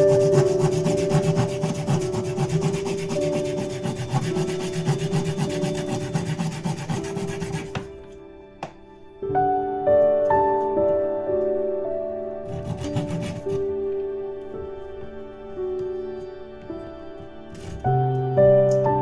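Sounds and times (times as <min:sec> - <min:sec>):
hand saw cutting wood: 0:00.0 - 0:07.9, 0:12.5 - 0:13.6
soft sustained music: 0:00.0 - 0:19.0.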